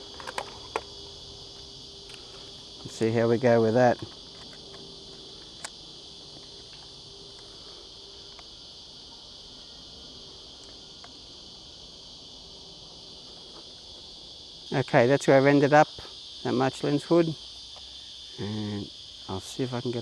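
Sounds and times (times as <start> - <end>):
insects chorus: 0.0 - 20.0
lens hood clicks: 0.1 - 0.9.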